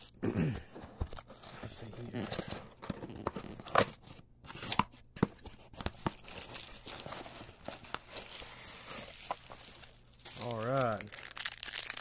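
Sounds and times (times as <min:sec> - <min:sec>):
packaging being torn and crinkled: 0:09.0 - 0:12.0.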